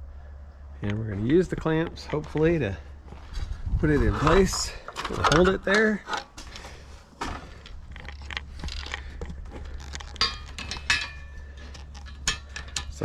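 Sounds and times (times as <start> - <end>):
metal knocks and clicks: 4.5 - 6.4, 8.0 - 13.0.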